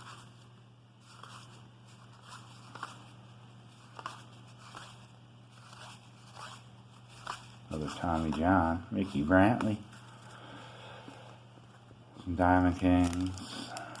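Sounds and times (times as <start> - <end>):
low steady hum: 0.0 - 14.0
cardboard cards ticking and snapping: 3.8 - 5.0, 12.8 - 14.0.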